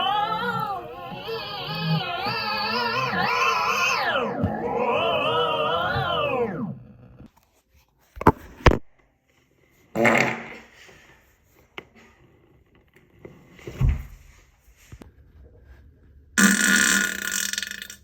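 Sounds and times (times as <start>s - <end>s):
person farting: 10.0s - 10.7s, 16.4s - 18.0s.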